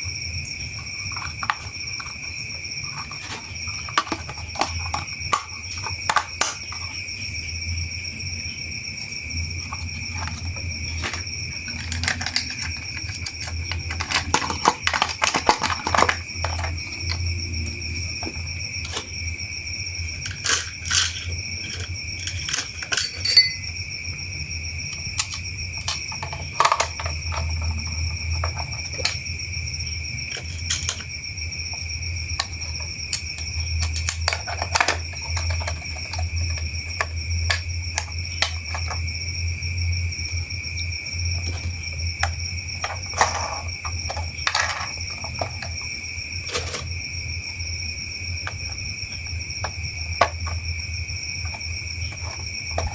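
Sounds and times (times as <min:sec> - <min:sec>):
high-pitched whine: 0:00.0 - 0:52.9
plastic toy parts clicking: 0:03.0 - 0:06.9, 0:10.0 - 0:17.2, 0:20.2 - 0:23.6, 0:24.9 - 0:29.2, 0:30.3 - 0:31.1, 0:32.4 - 0:39.0, 0:46.5 - 0:46.9.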